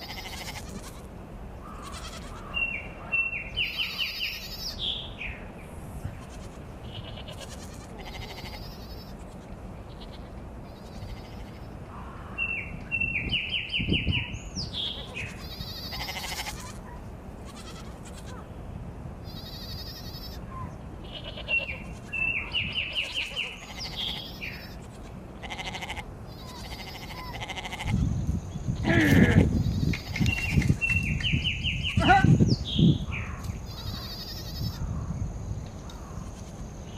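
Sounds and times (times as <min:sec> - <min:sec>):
sheep bleating: 0:00.0 - 0:01.1, 0:01.8 - 0:02.4, 0:06.2 - 0:10.3, 0:15.0 - 0:16.8, 0:17.4 - 0:18.4, 0:21.0 - 0:22.2, 0:22.9 - 0:28.1, 0:28.8 - 0:29.5, 0:33.7 - 0:34.8.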